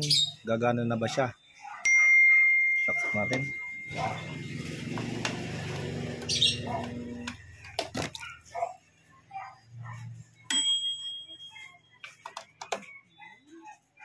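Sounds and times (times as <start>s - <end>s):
bell-like ding: 1.9s - 4.4s, 10.5s - 11.8s.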